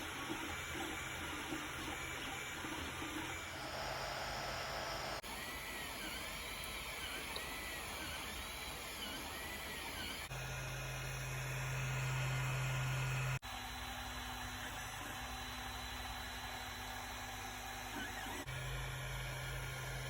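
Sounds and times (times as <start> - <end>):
stepper motors whining: 1.8 - 13.4.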